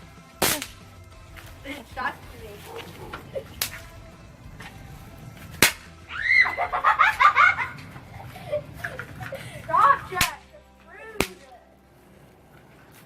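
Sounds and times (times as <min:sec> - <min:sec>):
snap pops cracking: 0:00.4 - 0:01.6, 0:02.7 - 0:04.8, 0:05.4 - 0:06.0, 0:10.2 - 0:10.5, 0:11.2 - 0:11.6
giggling laughter: 0:06.1 - 0:10.1.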